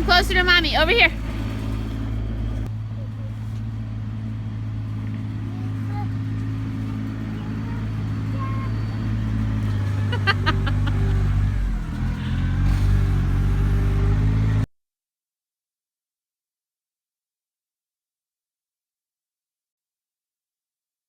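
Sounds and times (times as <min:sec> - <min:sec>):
tractor engine running: 0:00.0 - 0:14.7.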